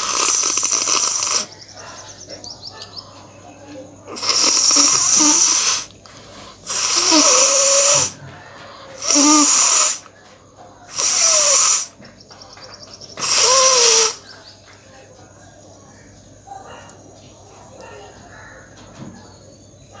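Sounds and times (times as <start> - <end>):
woman blowing her nose: 0.0 - 1.5, 4.1 - 5.9, 6.6 - 8.2, 9.0 - 10.0, 10.9 - 11.9, 13.2 - 14.2.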